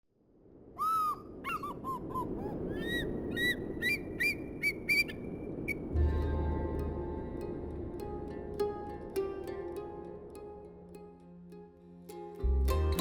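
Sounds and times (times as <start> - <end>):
music with sustained tones: 5.9 - 13.0.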